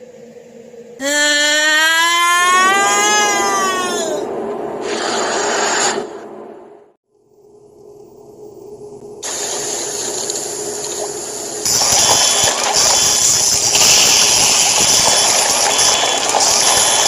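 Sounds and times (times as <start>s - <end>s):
steady low hum: 0.0s - 1.1s, 3.6s - 17.0s
loud rushing hiss: 9.2s - 17.0s.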